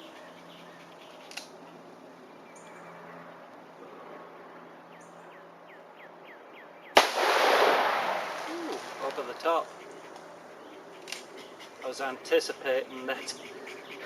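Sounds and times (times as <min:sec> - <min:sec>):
bird chirping: 0:00.0 - 0:03.3, 0:04.7 - 0:07.0, 0:08.5 - 0:14.0.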